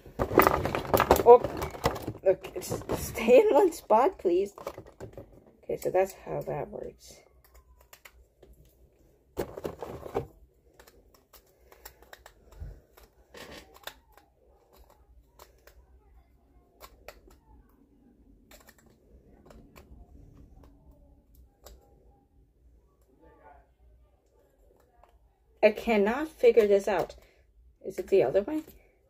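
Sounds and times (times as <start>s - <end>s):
plastic toy parts clicking: 7.2s - 8.7s, 9.5s - 22.0s.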